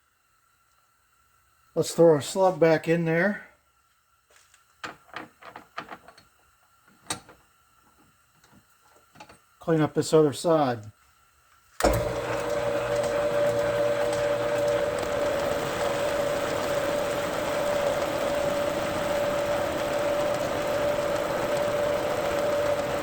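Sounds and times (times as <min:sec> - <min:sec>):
metal lathe whining: 0:11.8 - 0:23.0.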